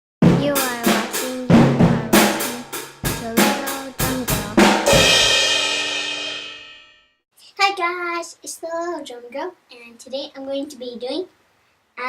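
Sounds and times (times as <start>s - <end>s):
drum kit fill: 0.2s - 7.0s.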